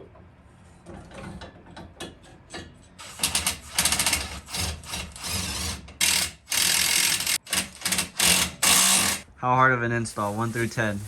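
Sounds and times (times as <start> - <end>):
power tool rattling bursts: 3.0 - 9.2.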